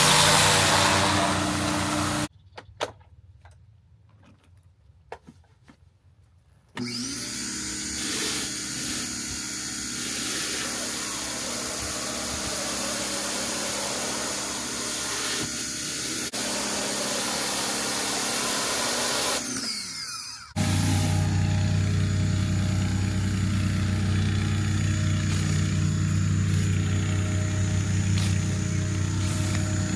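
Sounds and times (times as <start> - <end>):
pressure washer motor running: 0.0 - 2.3, 6.8 - 29.9
water spray hissing: 0.0 - 2.3, 20.6 - 29.9
low-pitched steady hum: 20.6 - 29.9.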